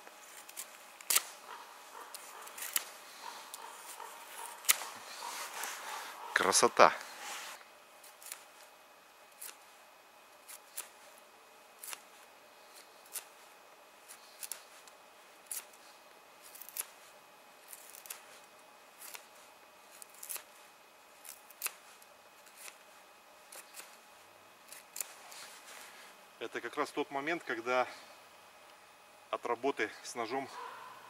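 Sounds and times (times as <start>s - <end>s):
knife shaving kindling: 0.2s - 6.5s, 11.8s - 15.8s, 16.4s - 24.0s.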